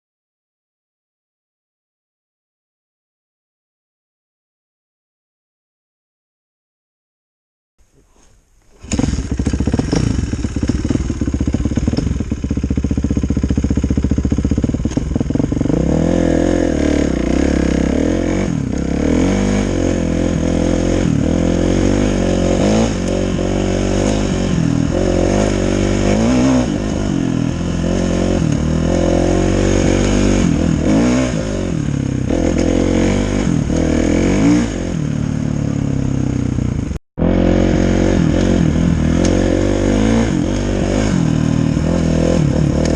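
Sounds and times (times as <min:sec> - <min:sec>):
dirt bike engine revving: 0:08.7 - 0:42.9.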